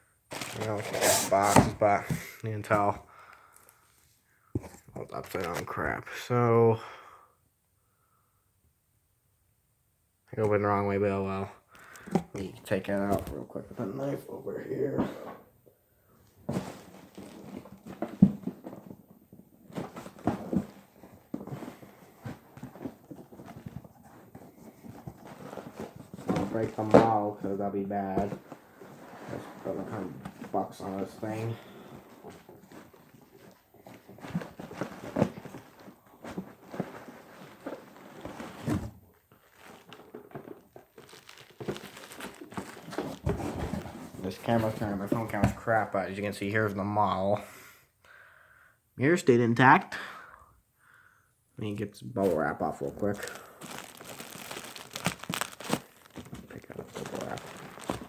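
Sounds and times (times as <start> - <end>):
packaging rustling and crinkling: 0.3 - 1.8, 16.5 - 19.1, 19.7 - 45.4, 52.7 - 58.0.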